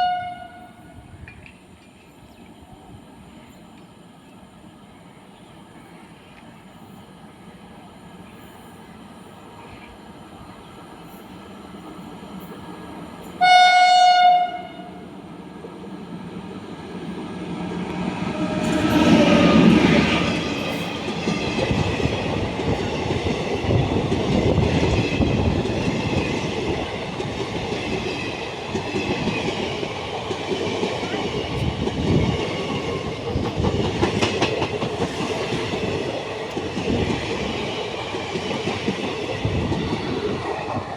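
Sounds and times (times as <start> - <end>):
train horn: 0.0 - 1.2, 13.4 - 15.1, 18.2 - 20.3
train passing rush: 0.0 - 40.9.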